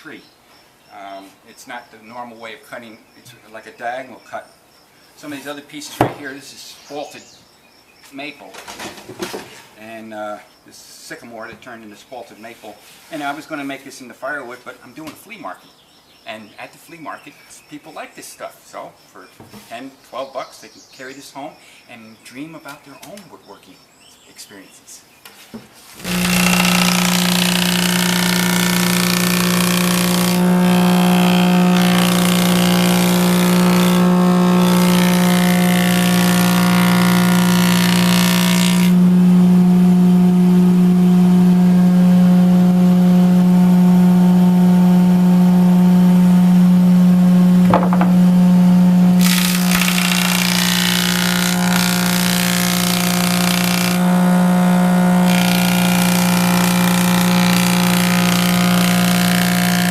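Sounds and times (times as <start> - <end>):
boards being planed: 26.0 - 59.9
jointer cutterhead humming: 26.0 - 59.9.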